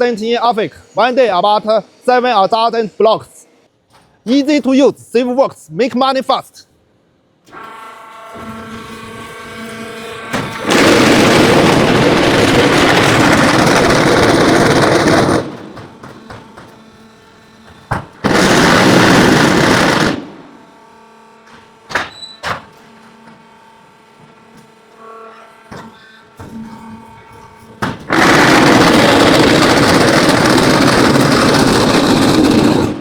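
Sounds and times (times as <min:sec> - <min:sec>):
block making machine running: 0:07.5 - 0:22.8, 0:26.4 - 0:33.0.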